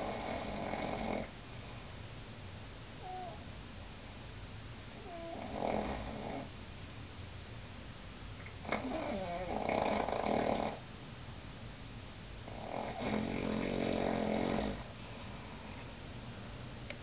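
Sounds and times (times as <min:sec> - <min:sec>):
man snoring: 0:00.0 - 0:01.3, 0:05.0 - 0:06.5, 0:08.7 - 0:10.8, 0:12.5 - 0:14.8.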